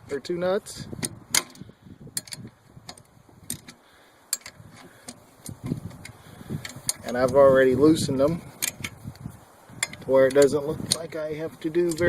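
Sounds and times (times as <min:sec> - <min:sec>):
dull handling noise: 0:00.0 - 0:12.0
wrench metal clicks: 0:02.2 - 0:07.4, 0:08.2 - 0:09.0, 0:09.8 - 0:12.0.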